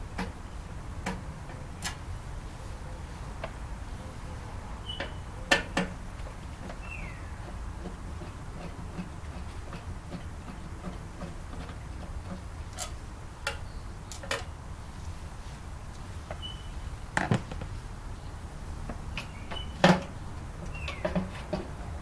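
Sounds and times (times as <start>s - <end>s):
tools and metal parts knocking: 19.0s - 21.9s.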